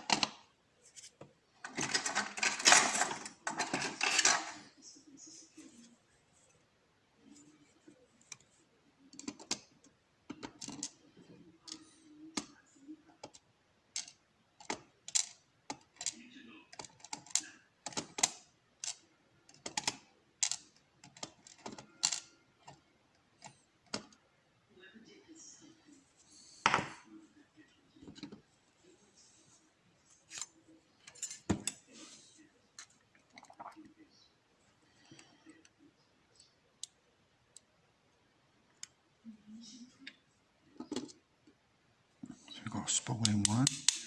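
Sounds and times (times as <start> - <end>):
lock pins rattling on a tray: 1.6 - 4.6.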